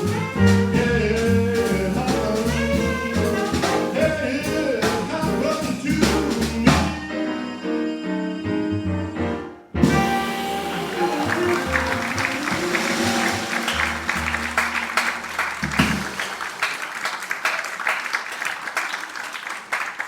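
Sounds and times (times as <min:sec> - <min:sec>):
live band closing chords: 0:00.0 - 0:07.4, 0:09.8 - 0:17.5
audience applause: 0:10.2 - 0:20.0.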